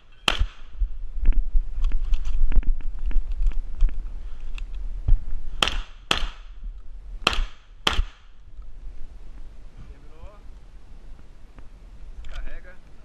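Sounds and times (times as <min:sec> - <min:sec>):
shotgun shots: 0:00.2 - 0:00.7, 0:05.6 - 0:06.6, 0:07.2 - 0:08.4.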